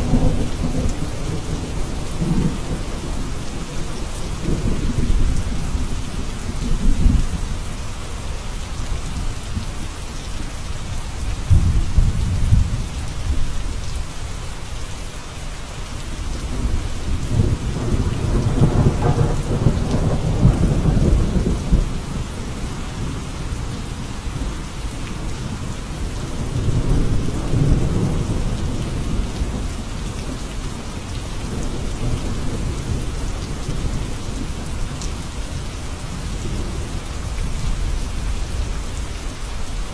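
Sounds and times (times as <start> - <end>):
thunder rolling: 0.0 - 5.9, 11.4 - 13.4, 16.4 - 23.1
heavy rain hissing: 0.0 - 39.9.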